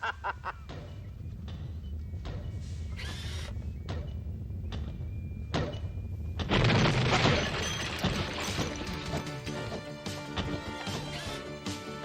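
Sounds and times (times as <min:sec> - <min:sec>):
low steady drone: 0:00.0 - 0:12.0
heavy thuds: 0:00.2 - 0:11.4
loud shattering crash: 0:06.5 - 0:09.6.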